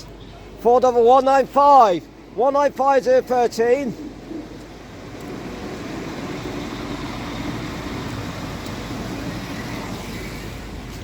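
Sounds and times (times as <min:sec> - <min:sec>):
diesel train engine running: 0:03.8 - 0:11.0.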